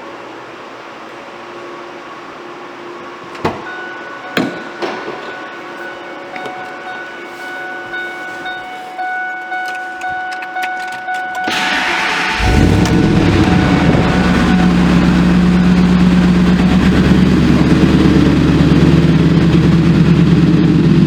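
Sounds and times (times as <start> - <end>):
dashboard warning chime: 3.5 - 19.5
engine starter cranking: 9.4 - 20.5
car engine starting: 9.7 - 21.0.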